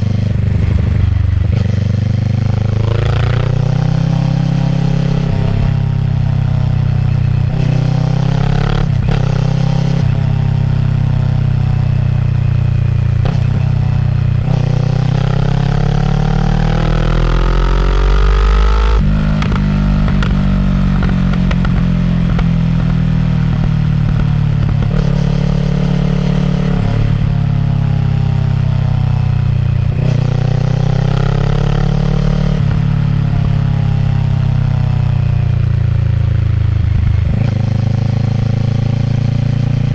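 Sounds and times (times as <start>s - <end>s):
motorcycle engine revving through gears: 0.0s - 39.9s.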